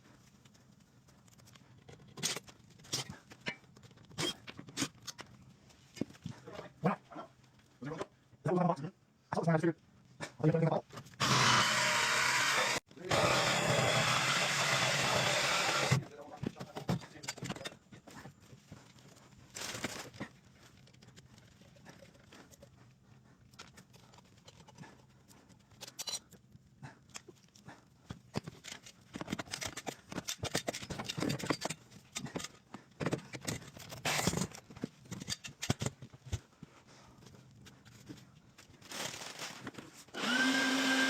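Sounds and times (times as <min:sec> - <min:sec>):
hands and tools clicking and scraping: 0:00.0 - 0:06.8, 0:15.7 - 0:38.9.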